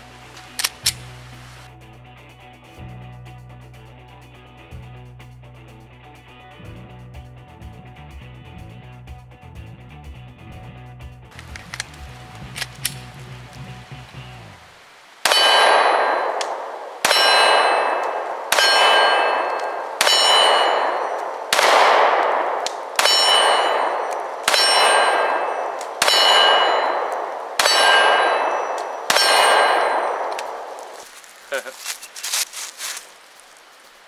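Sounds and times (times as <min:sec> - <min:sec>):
pistol shots: 0:15.2 - 0:30.7
steel target ringing: 0:15.2 - 0:30.8.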